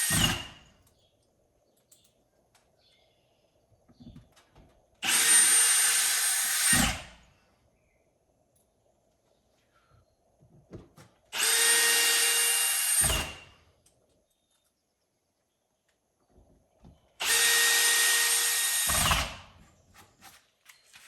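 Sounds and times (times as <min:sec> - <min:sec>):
power drill whining: 0:00.0 - 0:00.6, 0:05.0 - 0:07.1, 0:11.3 - 0:13.5, 0:17.2 - 0:19.4.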